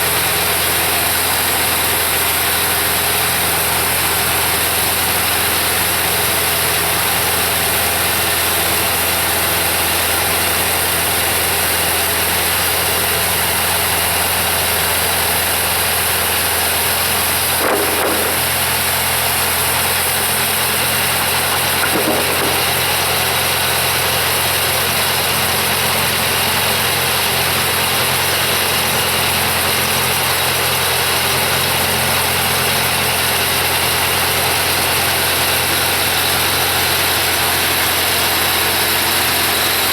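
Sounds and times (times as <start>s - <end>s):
diesel engine running: 0.0s - 39.9s
brief knocks: 17.6s - 18.7s, 21.8s - 22.8s.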